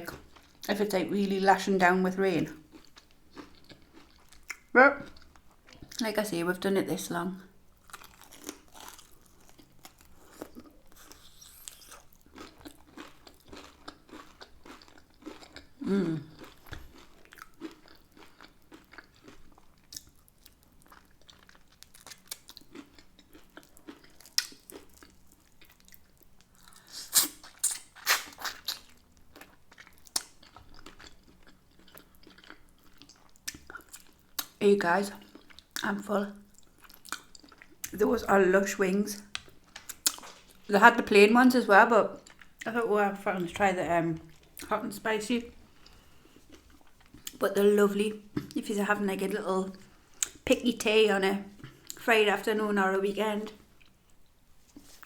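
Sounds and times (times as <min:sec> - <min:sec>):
chewing and crunching: 0:02.5 - 0:06.0, 0:07.8 - 0:38.0, 0:39.1 - 0:40.7, 0:45.5 - 0:47.5.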